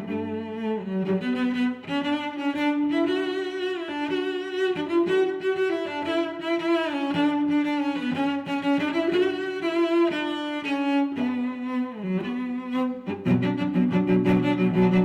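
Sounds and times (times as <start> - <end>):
bowed strings playing sustained notes: 0.0 - 3.0, 12.0 - 15.0.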